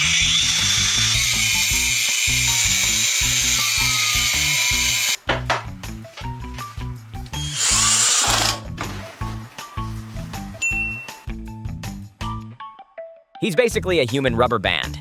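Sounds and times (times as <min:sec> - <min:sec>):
power tool high-pitched whine: 0:00.0 - 0:05.2, 0:07.4 - 0:08.6
background music with beat: 0:08.3 - 0:12.9.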